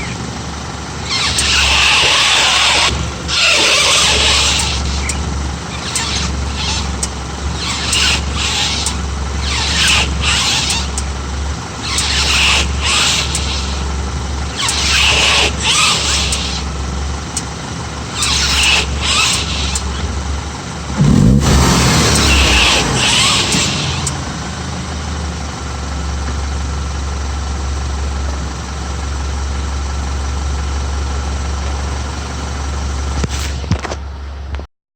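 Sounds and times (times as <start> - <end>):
low engine hum: 16.0 - 34.6
deep rumble: 20.9 - 26.2
high-pitched squeal: 21.0 - 25.3.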